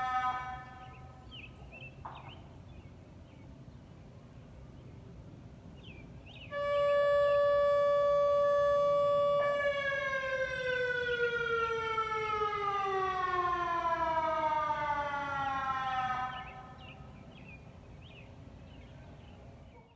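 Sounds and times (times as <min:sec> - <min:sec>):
electronic warning siren: 0:06.5 - 0:16.8.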